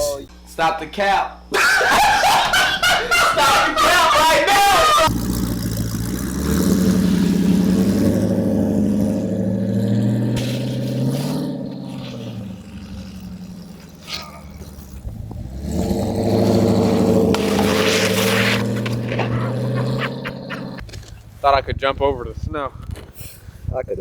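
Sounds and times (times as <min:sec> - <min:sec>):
car engine accelerating: 0:05.0 - 0:20.9.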